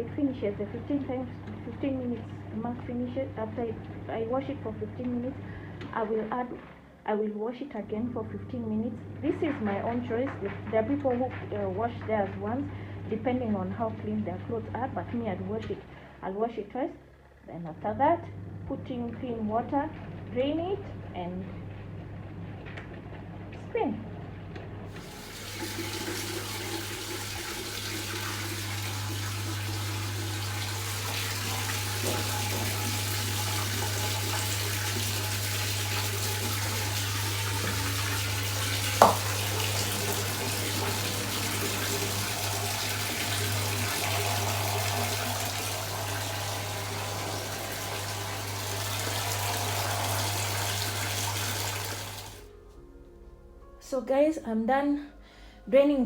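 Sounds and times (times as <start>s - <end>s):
washing machine low hum: 0.0s - 16.4s, 17.4s - 52.6s
water draining rush: 24.9s - 52.4s.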